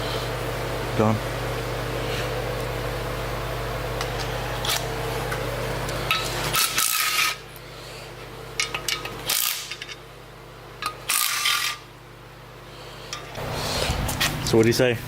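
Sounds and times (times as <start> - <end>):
steady low hum: 0.0 - 15.0
metal parts clinking and rattling: 10.8 - 11.8.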